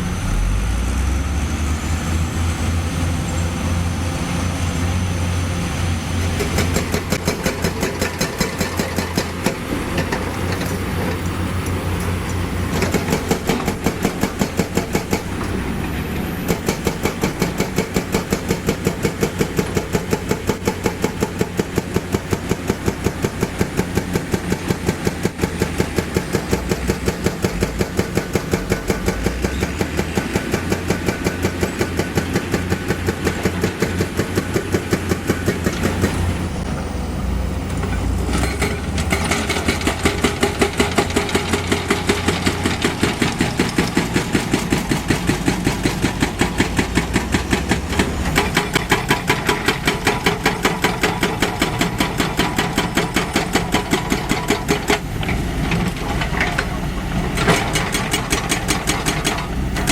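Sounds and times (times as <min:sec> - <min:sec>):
diesel engine of heavy machinery: 0:00.0 - 0:59.9.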